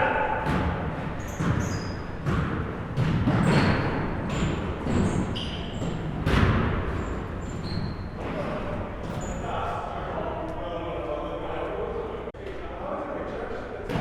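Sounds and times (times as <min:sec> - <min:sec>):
sneaker squeaks: 0:00.1 - 0:09.6
basketballs bouncing on gym floor: 0:00.3 - 0:09.4.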